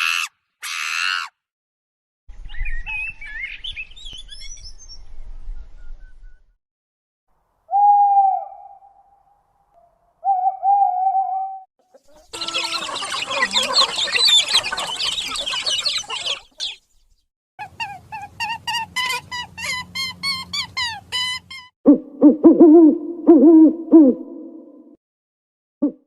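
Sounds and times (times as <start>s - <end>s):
small birds chirping: 11.8s - 21.7s
low arching hoots: 12.0s - 16.8s.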